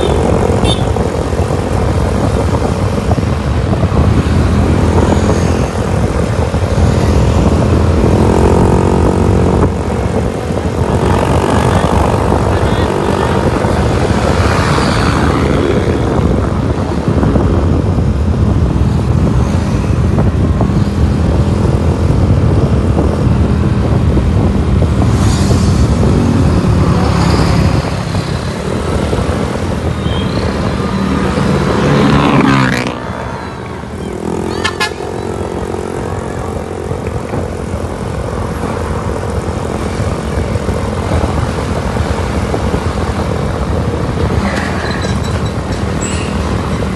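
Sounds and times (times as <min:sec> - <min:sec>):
road traffic engines: 0:00.0 - 0:46.9
vehicle passing close by: 0:24.5 - 0:37.0.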